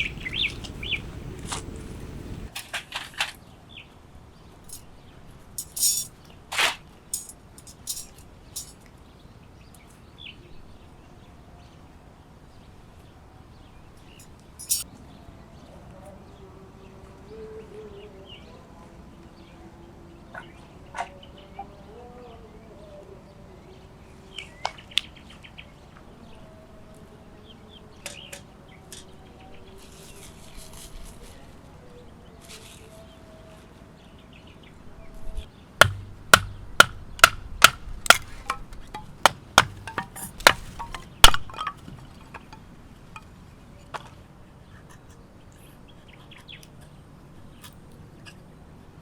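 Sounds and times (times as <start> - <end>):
tool striking something solid: 35.8 - 42.0.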